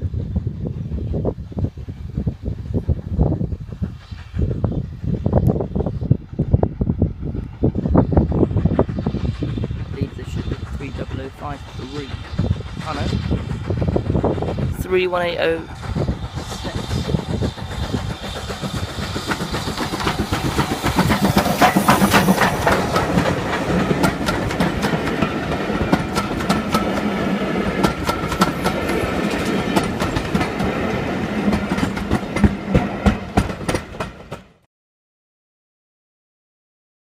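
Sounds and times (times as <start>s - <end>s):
steady train rumble: 0.0s - 34.7s
train wheels clicking over rail joints: 15.4s - 34.6s.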